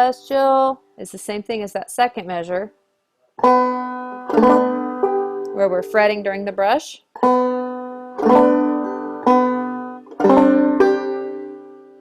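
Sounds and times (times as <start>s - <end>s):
banjo plucked and strummed: 3.3s - 12.0s.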